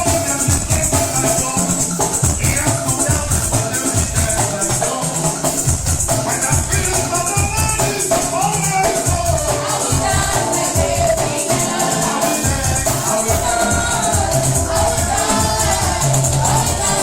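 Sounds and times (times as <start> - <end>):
lively praise music: 0.0 - 17.0
bass drum pulses: 12.4 - 17.0.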